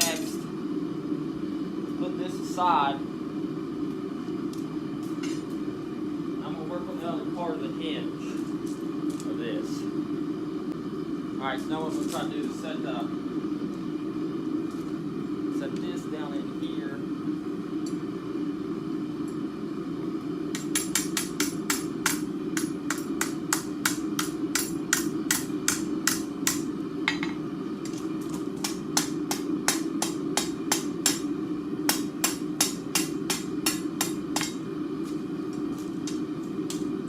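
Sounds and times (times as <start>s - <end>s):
hammer striking steel on anvil: 20.6s - 27.4s, 28.6s - 31.3s, 31.9s - 34.6s.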